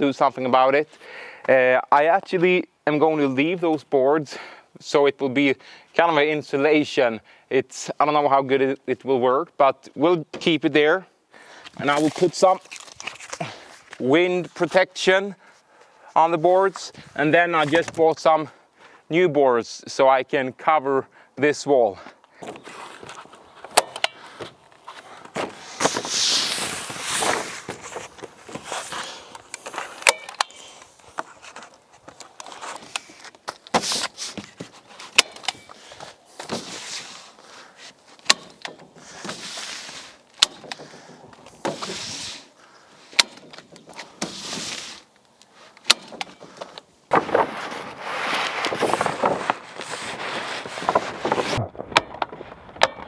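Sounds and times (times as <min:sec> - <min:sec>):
sheeting rustling: 0:11.6 - 0:14.8, 0:22.3 - 0:52.8
sharp clicks and knocks: 0:51.7 - 0:53.0.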